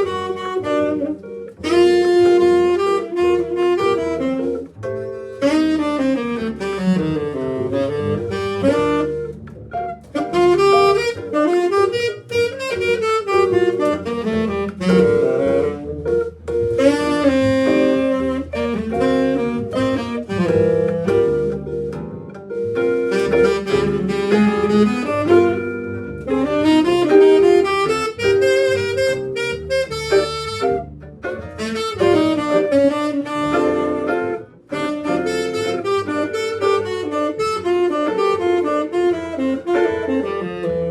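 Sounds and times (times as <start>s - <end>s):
jazz band playing: 0.0s - 40.9s
saxophone melody: 0.0s - 40.9s.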